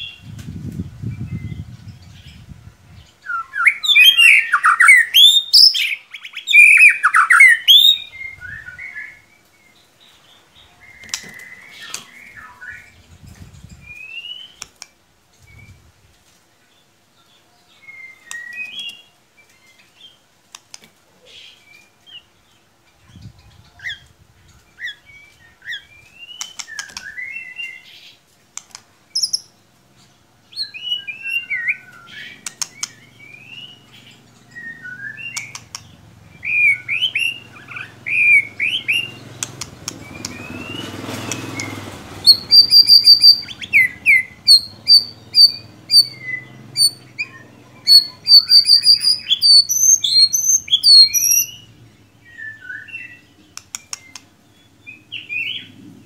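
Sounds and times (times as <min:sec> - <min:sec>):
bird chirps and calls: 0:00.0 - 0:14.7, 0:21.2 - 0:56.0
bird whistled song: 0:03.2 - 0:09.4, 0:13.7 - 0:14.6, 0:17.8 - 0:20.1, 0:24.7 - 0:28.1, 0:29.1 - 0:29.5, 0:30.5 - 0:55.8
sharp clicks: 0:20.5 - 0:20.9, 0:28.5 - 0:29.3, 0:32.4 - 0:33.0, 0:35.3 - 0:36.0, 0:38.5 - 0:43.4, 0:53.5 - 0:54.3.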